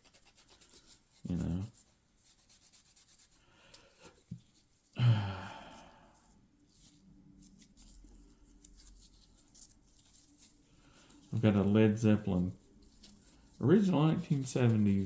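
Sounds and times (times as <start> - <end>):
man sighing heavily: 5.0 - 6.2.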